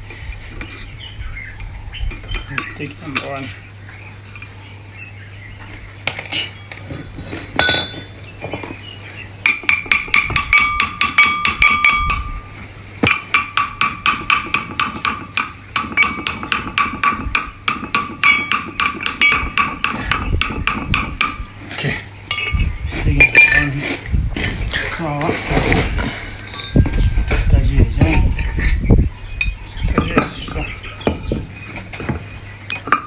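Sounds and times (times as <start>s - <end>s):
hammer blows on metal: 9.4s - 21.5s.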